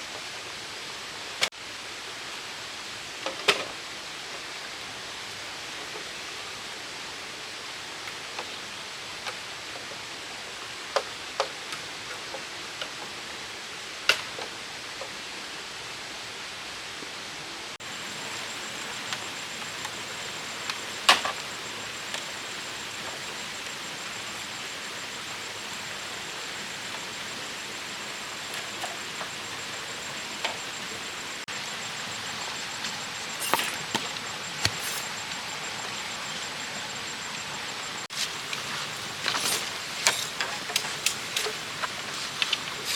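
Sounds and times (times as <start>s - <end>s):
steady hiss: 0.0s - 42.9s
thin high steady tone: 17.8s - 41.9s.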